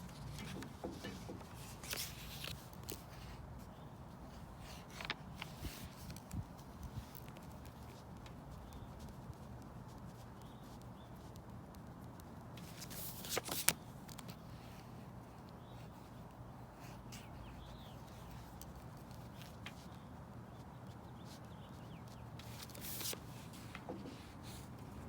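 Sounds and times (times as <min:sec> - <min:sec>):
faint bird chirps: 0:15.6 - 0:18.5.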